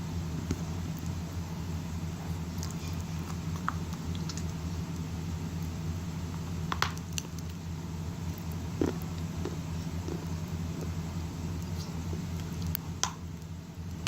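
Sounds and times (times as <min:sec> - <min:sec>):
low hum: 0:00.0 - 0:14.0
sticky chewing squishes: 0:02.4 - 0:05.1, 0:08.3 - 0:13.3.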